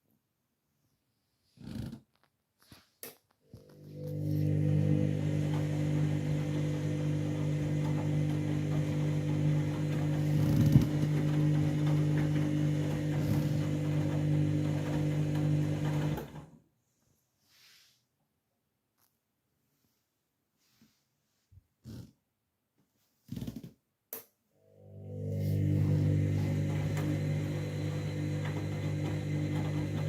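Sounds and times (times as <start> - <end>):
washing machine pump humming: 3.5 - 16.5, 24.8 - 30.0.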